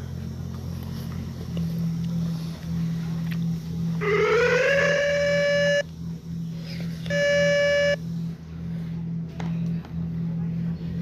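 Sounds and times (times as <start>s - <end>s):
steady low hum: 0.0s - 11.0s
tornado warning siren: 3.8s - 5.9s, 7.0s - 8.2s.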